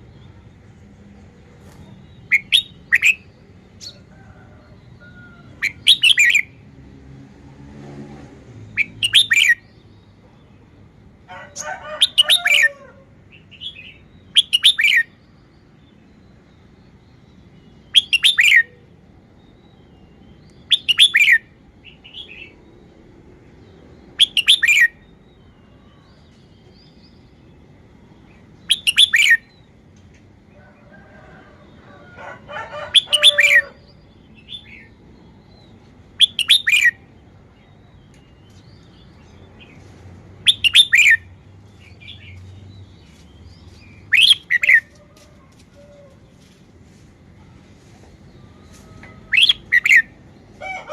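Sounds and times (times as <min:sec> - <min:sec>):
bulbul singing: 0:01.8 - 0:04.1, 0:04.9 - 0:06.6, 0:08.7 - 0:10.6, 0:13.3 - 0:23.0, 0:23.6 - 0:30.0, 0:32.4 - 0:45.0, 0:48.3 - 0:50.9.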